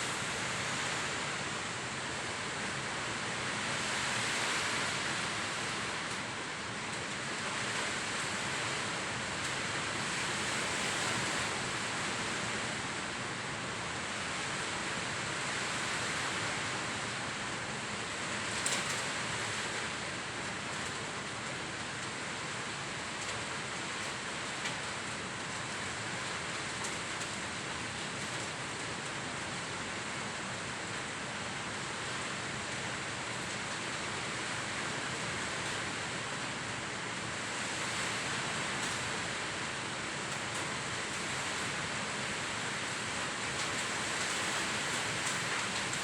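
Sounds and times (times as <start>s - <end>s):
heavy rain pouring: 34.2s - 46.0s.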